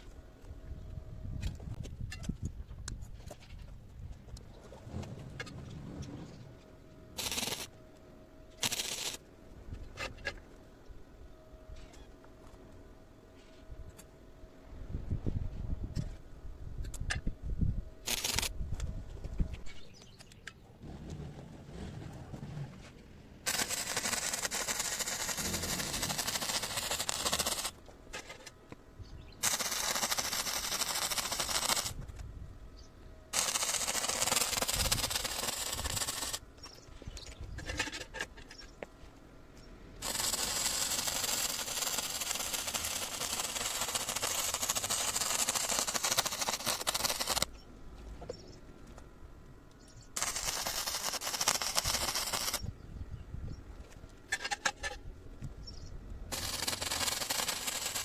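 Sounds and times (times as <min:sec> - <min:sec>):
welding arc crackling: 0:07.2 - 0:07.7, 0:08.6 - 0:09.2, 0:18.0 - 0:18.5, 0:23.5 - 0:27.8, 0:29.4 - 0:32.0, 0:33.3 - 0:36.4, 0:40.0 - 0:47.5, 0:50.2 - 0:52.6, 0:56.3 - 0:58.0.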